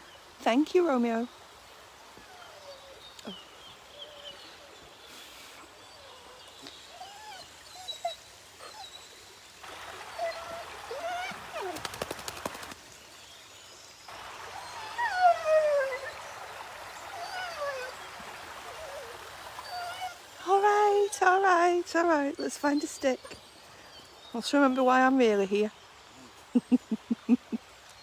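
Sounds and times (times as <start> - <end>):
dog whining: 5.8 - 9.0, 10.0 - 11.9, 14.2 - 20.2
stream rushing: 7.4 - 13.2, 14.0 - 21.8.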